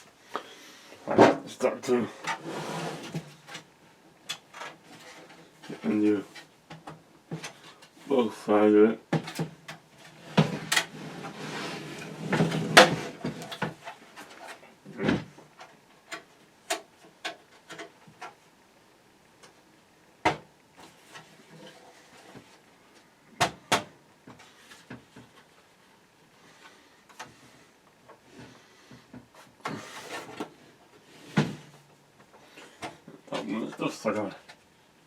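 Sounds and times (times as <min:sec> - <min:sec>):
scraping and rubbing on plastic: 0:10.0 - 0:14.8.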